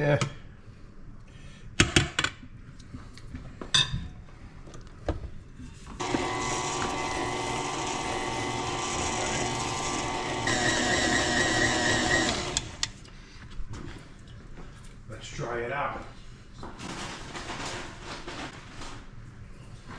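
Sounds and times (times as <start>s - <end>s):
electric stand mixer running: 6.0s - 13.0s.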